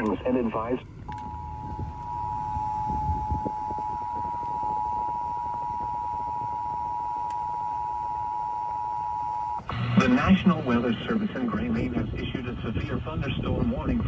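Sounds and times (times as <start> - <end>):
faint low rumble: 0.0 - 14.0.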